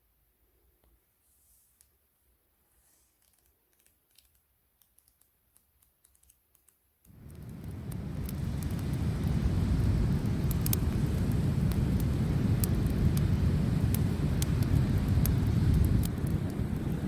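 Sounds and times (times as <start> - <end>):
campfire crackling: 7.0 - 17.0
loud rushing with deep rumble: 7.2 - 17.0.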